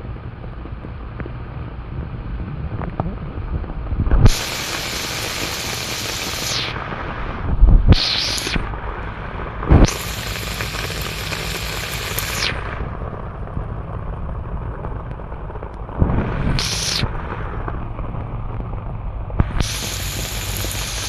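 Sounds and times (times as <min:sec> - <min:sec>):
wind buffeting microphone: 0:00.0 - 0:05.0, 0:06.7 - 0:08.0, 0:12.6 - 0:21.0
water rushing over rocks: 0:04.2 - 0:13.0, 0:16.0 - 0:17.9, 0:19.4 - 0:21.0.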